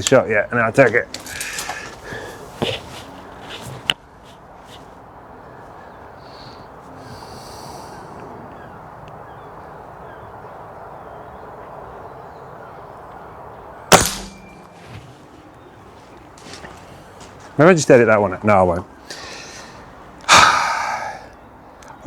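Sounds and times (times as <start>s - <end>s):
air rifle shot: 13.9s - 14.6s.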